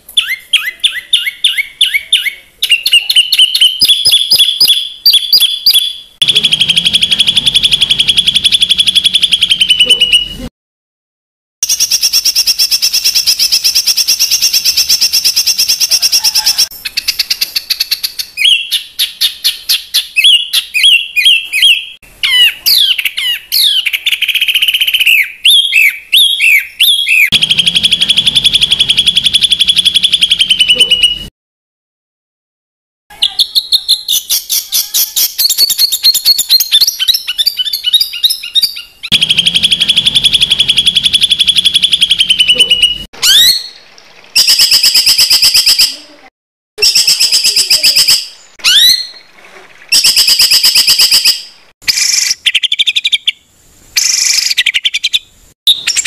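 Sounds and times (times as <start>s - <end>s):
chirping trills: 0.2s - 10.5s, 11.6s - 31.3s, 33.2s - 43.7s
songbird harsh song: 0.2s - 10.5s, 11.6s - 31.3s.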